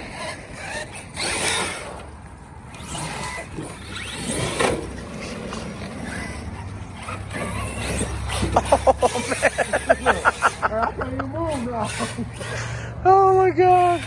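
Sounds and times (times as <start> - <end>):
rc truck motor whining: 0.0 - 14.0.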